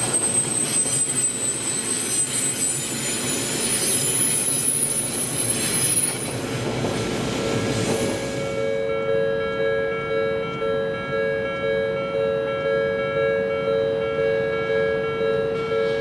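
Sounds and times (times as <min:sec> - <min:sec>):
level crossing warning bell: 0:08.4 - 0:16.0.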